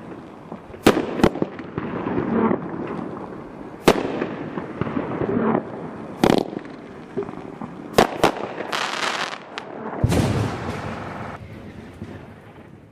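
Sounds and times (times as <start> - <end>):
firework bangs: 0.0 - 12.9
firework crackling: 0.0 - 12.9
rumbling firework burst: 10.0 - 12.9.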